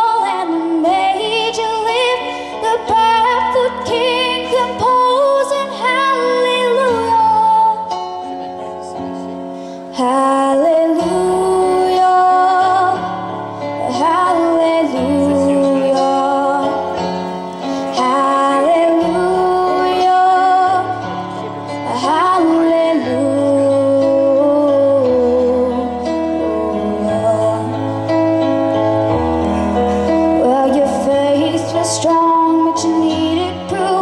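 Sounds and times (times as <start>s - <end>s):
woman singing with vibrato: 0.0s - 8.0s, 9.9s - 17.0s, 17.8s - 28.0s, 30.4s - 34.0s.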